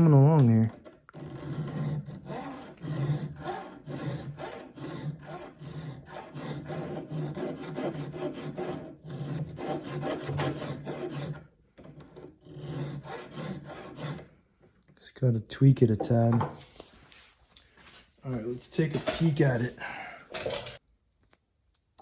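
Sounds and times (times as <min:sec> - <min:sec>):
hand file rasping on steel: 0:01.1 - 0:14.3.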